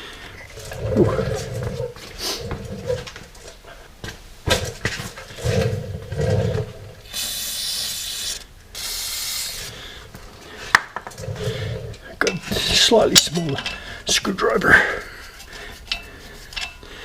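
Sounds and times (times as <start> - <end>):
low rumbling: 0.0 - 3.6, 4.6 - 7.1, 11.0 - 12.8
aerosol spray hissing: 7.1 - 9.8.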